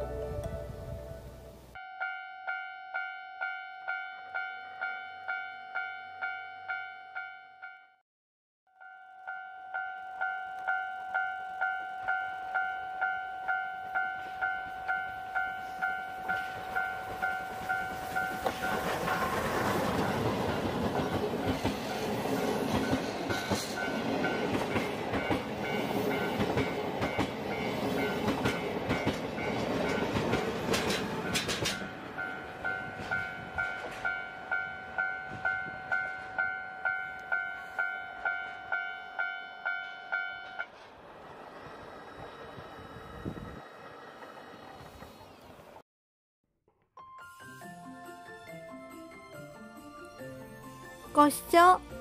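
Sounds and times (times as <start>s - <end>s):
level-crossing warning bell dinging: 1.8s - 7.9s, 8.7s - 30.5s, 31.2s - 40.7s
train wheels clattering over rail joints: 26.2s - 31.9s
steam train rumble: 40.7s - 45.8s.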